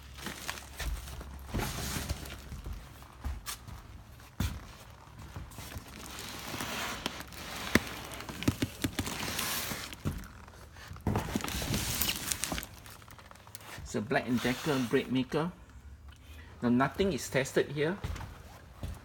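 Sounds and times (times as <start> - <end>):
rustling noise: 0.0 - 15.2
footsteps: 0.3 - 13.9, 17.9 - 19.0.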